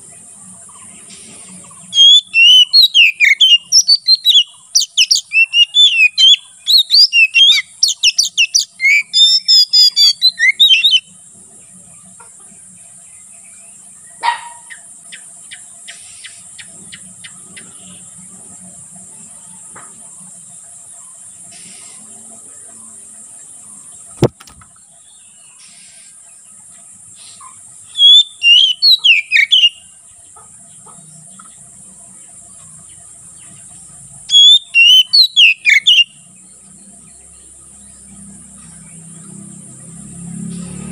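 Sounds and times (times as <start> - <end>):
bird singing whistled phrases: 1.9 - 11.1, 27.9 - 29.8, 34.3 - 36.2
sharp click: 24.2 - 24.7
high insect drone: 35.6 - 40.9.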